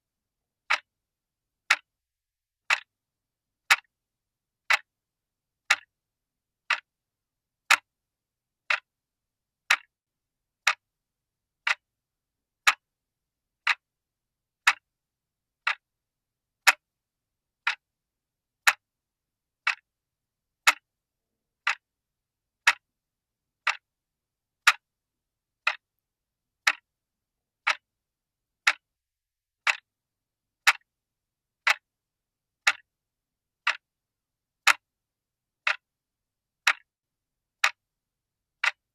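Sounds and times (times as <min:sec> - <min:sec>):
clock ticking: 0:00.7 - 0:00.9, 0:01.7 - 0:01.9, 0:02.7 - 0:02.9, 0:03.7 - 0:03.9, 0:04.7 - 0:04.9, 0:05.7 - 0:05.9, 0:06.7 - 0:06.9, 0:07.7 - 0:07.9, 0:08.6 - 0:08.9, 0:09.6 - 0:10.0, 0:10.6 - 0:10.8, 0:11.6 - 0:11.9, 0:12.6 - 0:12.8, 0:13.6 - 0:13.8, 0:14.6 - 0:14.9, 0:15.6 - 0:15.8, 0:16.6 - 0:16.8, 0:17.6 - 0:17.8, 0:18.6 - 0:18.8, 0:19.6 - 0:19.9, 0:20.6 - 0:20.9, 0:21.6 - 0:21.9, 0:22.6 - 0:22.8, 0:23.6 - 0:23.8, 0:24.6 - 0:24.9, 0:25.6 - 0:25.8, 0:26.6 - 0:26.9, 0:27.6 - 0:27.8, 0:28.6 - 0:28.8, 0:29.6 - 0:29.9, 0:30.6 - 0:30.9, 0:31.6 - 0:31.9, 0:32.6 - 0:32.9, 0:33.6 - 0:33.9, 0:34.6 - 0:34.9, 0:35.6 - 0:35.9, 0:36.6 - 0:36.9, 0:37.6 - 0:37.8, 0:38.6 - 0:38.9.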